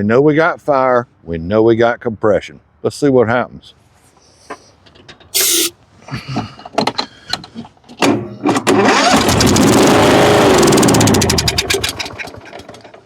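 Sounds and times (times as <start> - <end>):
short hiss: 5.3 - 5.8
engine cranking and running: 8.5 - 13.0.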